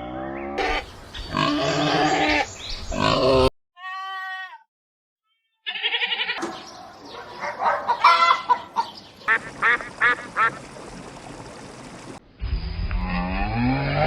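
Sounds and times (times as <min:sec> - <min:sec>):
waterfowl calling: 0:06.4 - 0:11.0.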